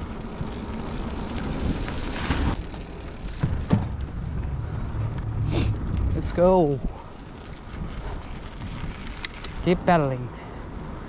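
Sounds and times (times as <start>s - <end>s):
mountain bike rolling: 0.0s - 11.0s
wind noise on microphone: 3.4s - 9.9s.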